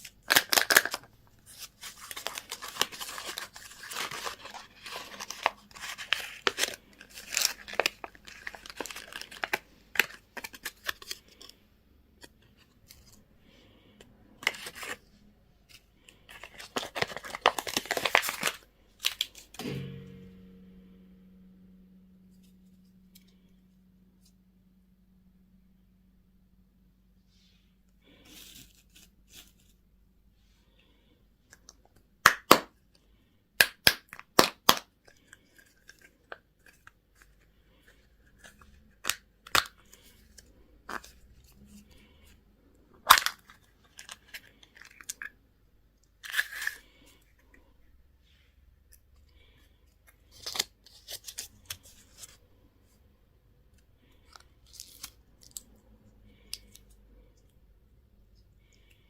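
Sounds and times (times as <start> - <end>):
wrappers crinkling and tearing: 0.0 - 11.6, 16.2 - 19.6, 54.2 - 55.7
plastic packaging snapping: 0.2 - 1.1.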